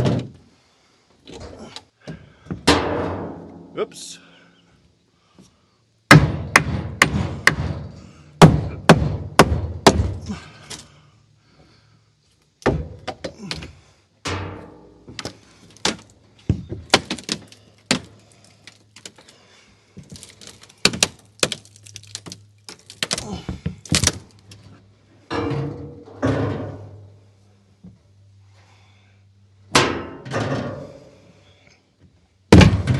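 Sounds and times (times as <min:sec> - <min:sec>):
wooden crate knocks and thuds: 0:00.0 - 0:00.4, 0:06.1 - 0:10.3, 0:12.6 - 0:13.8, 0:15.1 - 0:18.1, 0:20.0 - 0:24.3, 0:32.5 - 0:32.9.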